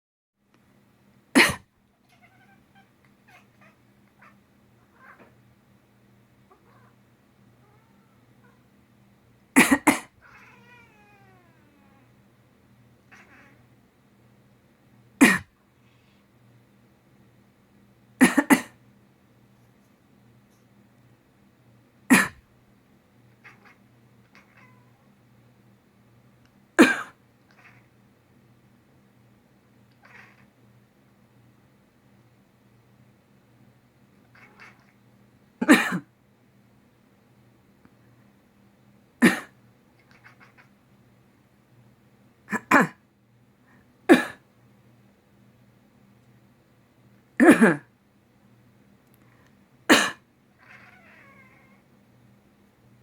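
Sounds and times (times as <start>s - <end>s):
person coughing: 1.4s - 1.7s, 9.6s - 10.2s, 15.2s - 15.6s, 18.2s - 18.8s, 22.1s - 22.4s, 26.8s - 27.2s, 35.6s - 36.1s, 39.2s - 39.6s, 42.5s - 43.0s, 44.1s - 44.4s, 47.4s - 47.9s, 49.9s - 50.2s
cat chirping: 2.0s - 5.3s, 13.1s - 13.6s, 23.4s - 25.0s, 27.5s - 27.9s, 30.0s - 30.5s, 34.3s - 35.0s, 40.0s - 40.8s, 50.6s - 51.8s.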